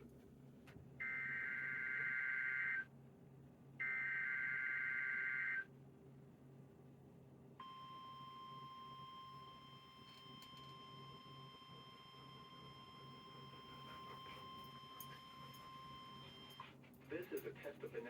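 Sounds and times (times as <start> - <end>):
steady alarm tone: 10.6 - 16.6.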